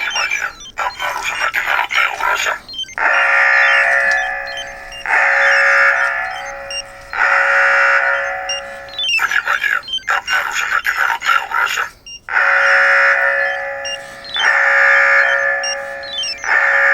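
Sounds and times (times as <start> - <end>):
electronic alert tone: 2.8 - 10.2, 12.1 - 16.9.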